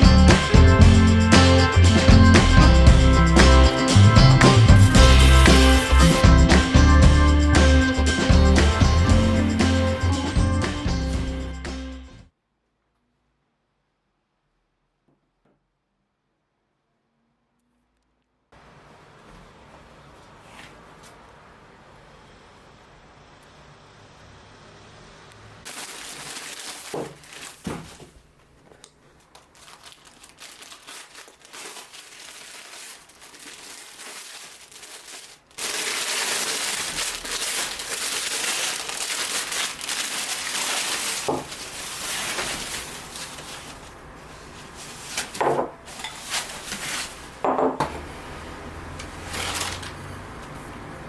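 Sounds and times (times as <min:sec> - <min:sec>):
packaging crinkling and rustling: 0:04.8 - 0:06.2, 0:25.7 - 0:47.4, 0:49.0 - 0:50.6.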